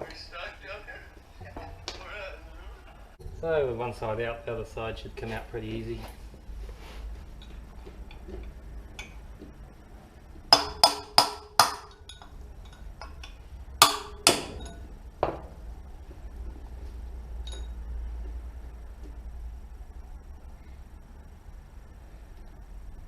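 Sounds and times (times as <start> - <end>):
hammer striking metal: 10.5 - 15.4.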